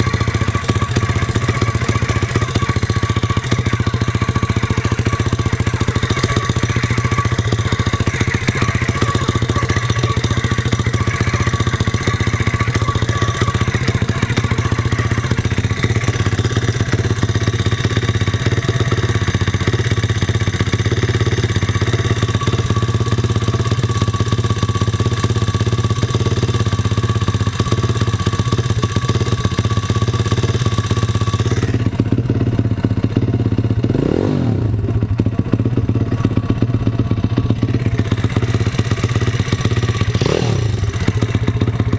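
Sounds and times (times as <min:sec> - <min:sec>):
motorbike engine running: 0:00.0 - 0:41.9.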